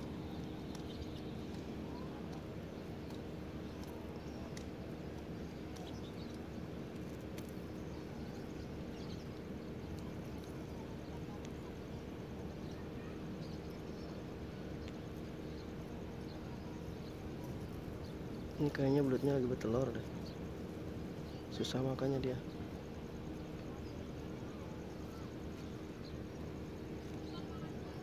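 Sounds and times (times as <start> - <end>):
faint ticks: 0.3 - 10.8, 14.8 - 15.8.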